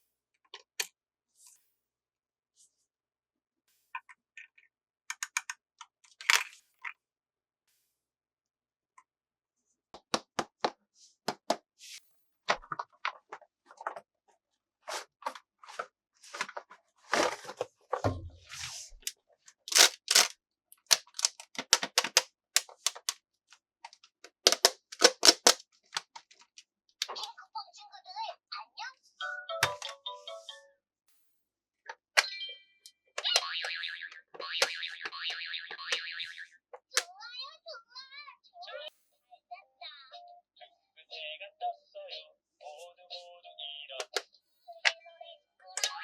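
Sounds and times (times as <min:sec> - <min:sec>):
plastic packaging being opened: 0:19.7 - 0:23.2, 0:24.4 - 0:26.2.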